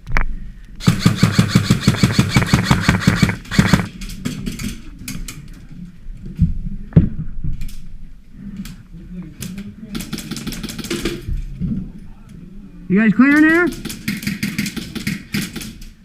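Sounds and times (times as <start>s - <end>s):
airsoft gun firing bursts: 0.8s - 3.9s.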